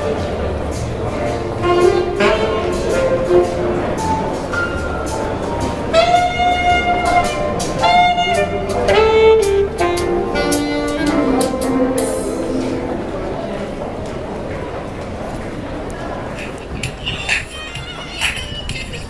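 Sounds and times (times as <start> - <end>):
steady background noise: 0.0 - 19.0
wind instrument jazz melody: 1.0 - 13.0.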